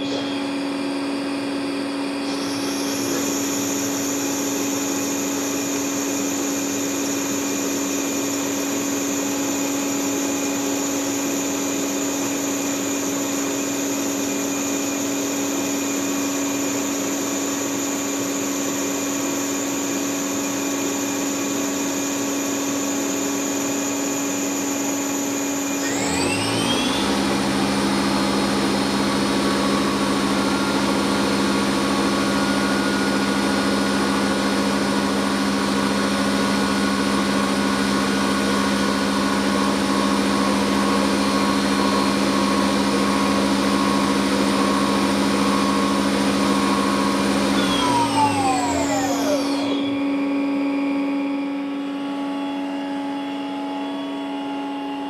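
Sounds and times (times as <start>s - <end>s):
spindle whine: 0.0s - 8.2s, 23.6s - 54.9s
lathe machine hum: 0.0s - 54.8s.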